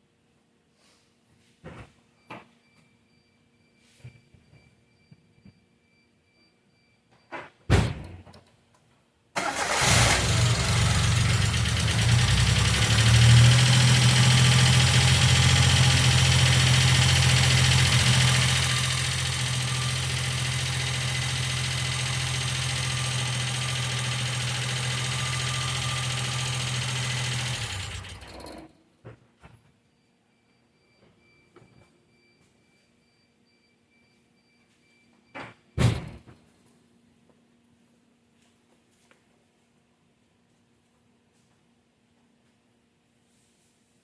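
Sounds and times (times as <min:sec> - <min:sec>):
car engine idling: 0:09.4 - 0:28.4.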